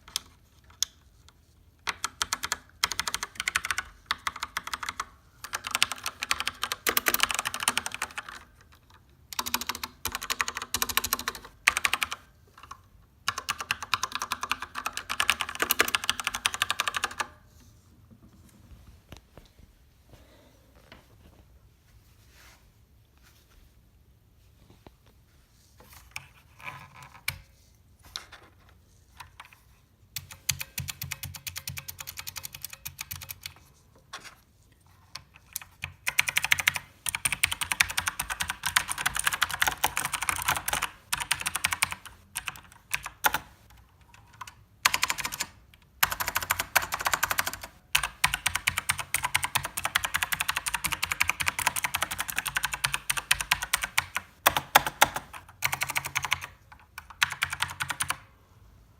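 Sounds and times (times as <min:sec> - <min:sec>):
mechanical keyboard typing: 0:01.8 - 0:17.4, 0:30.2 - 0:33.7, 0:35.1 - 0:58.3.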